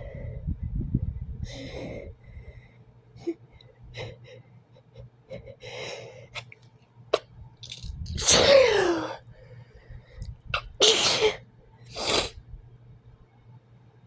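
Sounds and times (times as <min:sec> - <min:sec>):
person sneezing: 0:08.2 - 0:09.2, 0:10.6 - 0:11.4.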